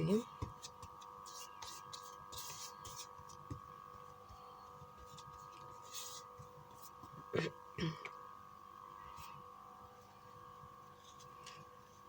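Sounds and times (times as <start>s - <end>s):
steady low hum: 0.0s - 12.0s
brush rustling on paper: 0.6s - 3.5s, 4.9s - 7.2s.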